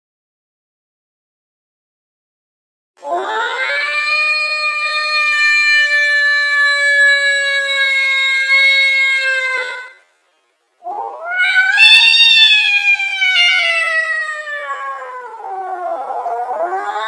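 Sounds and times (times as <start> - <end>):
angry cat yowling slowed down: 3.0 - 10.0, 10.9 - 17.0.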